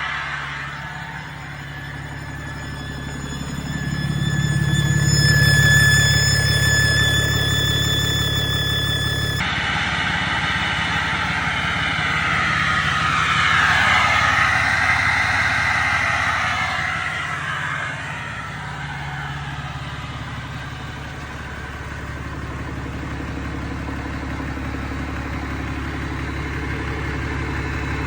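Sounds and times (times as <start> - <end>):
high rushing noise: 0.0 - 20.4
diesel engine idling: 0.0 - 28.0.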